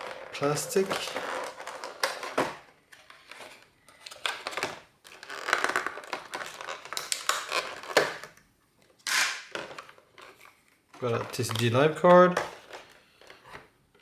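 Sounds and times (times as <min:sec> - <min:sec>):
plastic packaging crinkling: 0:00.2 - 0:08.3.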